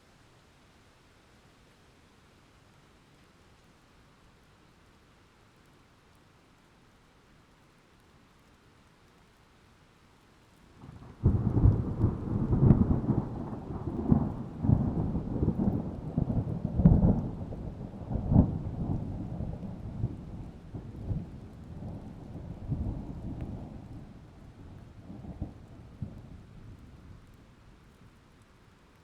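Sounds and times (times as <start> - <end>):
thunder crack and rolling rumble: 10.8 - 27.5.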